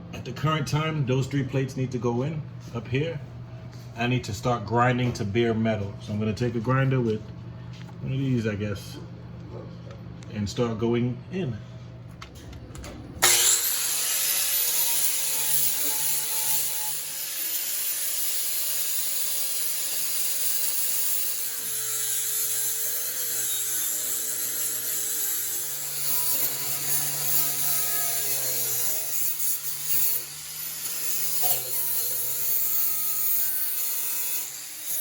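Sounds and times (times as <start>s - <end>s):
angle grinder grinding steel: 13.2s - 35.0s.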